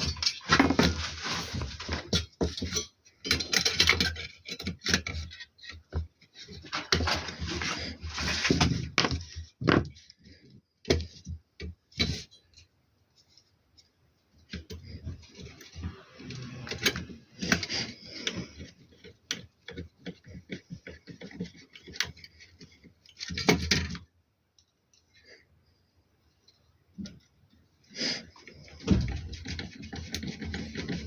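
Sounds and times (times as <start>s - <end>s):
rustling: 0.0s - 9.5s.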